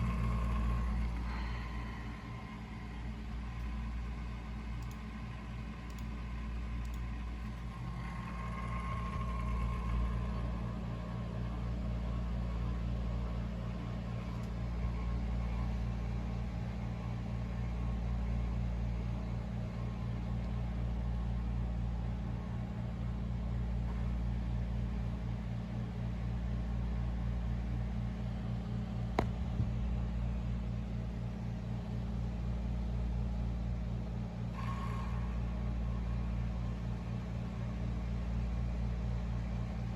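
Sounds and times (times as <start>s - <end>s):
stalled fan motor humming: 0.0s - 39.9s
sharp click: 4.8s - 5.1s.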